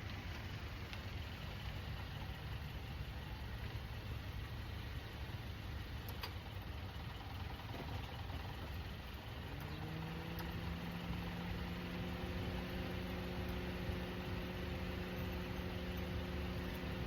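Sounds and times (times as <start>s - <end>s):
low mechanical rumble: 0.0s - 17.0s
motor spinning up with hum: 6.3s - 17.0s.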